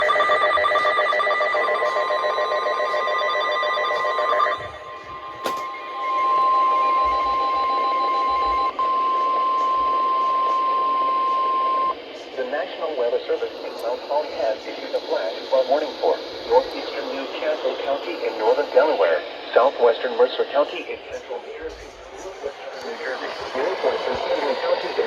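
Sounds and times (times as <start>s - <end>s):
steady warning alarm tone: 0.0s - 12.0s, 12.6s - 25.0s
pulsing warbling data tones: 13.9s - 25.0s.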